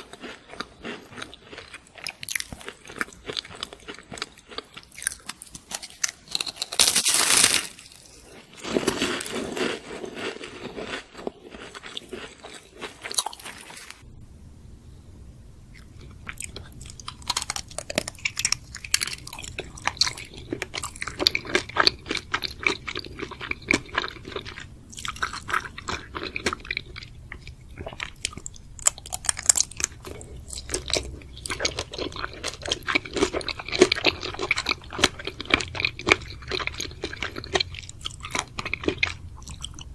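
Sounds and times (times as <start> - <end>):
crunching and chewing: 0.0 - 14.0, 15.8 - 39.9
low hum: 14.0 - 20.6.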